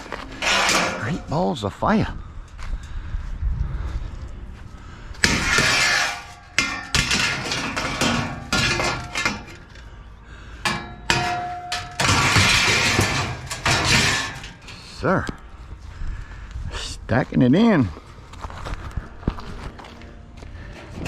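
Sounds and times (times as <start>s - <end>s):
metal scrap clanking: 0.0s - 1.7s, 5.2s - 9.9s, 10.6s - 15.3s, 20.6s - 21.0s
metal scraping against metal: 0.0s - 1.8s, 5.2s - 15.4s, 20.6s - 21.0s.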